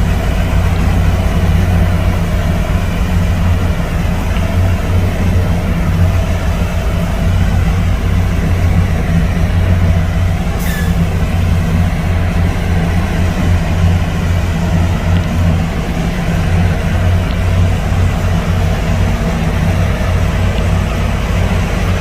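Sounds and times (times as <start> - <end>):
diesel engine low drone: 0.0 - 22.0
hiss with falling squeak: 10.6 - 11.0.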